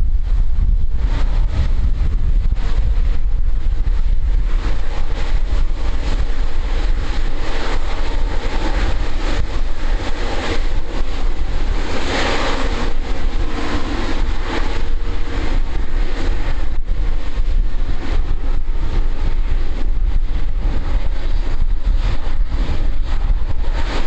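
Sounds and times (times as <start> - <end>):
jet engines rumbling: 0.0 - 24.0
wind buffeting microphone: 0.0 - 24.0.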